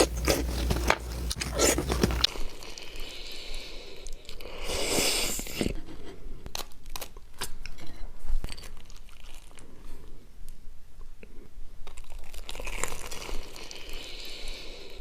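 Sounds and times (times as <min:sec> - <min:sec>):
person crunching and chewing food: 0:00.0 - 0:02.4, 0:12.0 - 0:13.8.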